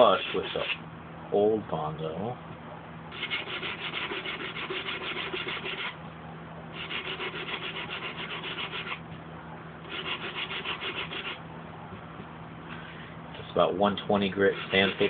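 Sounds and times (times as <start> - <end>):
hand sanding strokes: 0.0 - 0.8, 3.2 - 6.0, 6.8 - 9.0, 9.9 - 11.4, 14.1 - 15.0.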